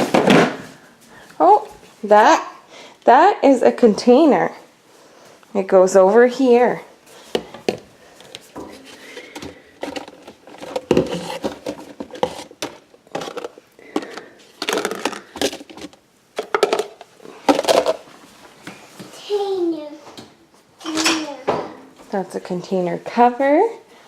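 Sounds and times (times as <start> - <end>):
dishes and containers clattering: 7.3 - 18.1.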